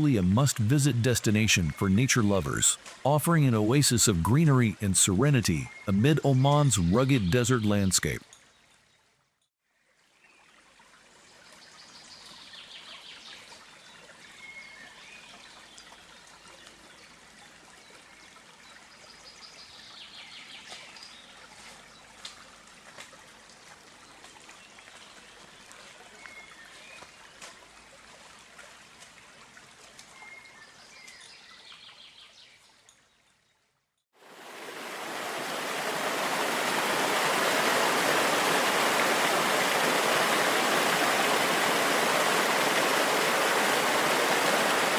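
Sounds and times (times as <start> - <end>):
stream water trickling: 9.8 - 20.1, 20.7 - 31.8, 34.2 - 44.9
waterfall rushing: 34.2 - 44.9.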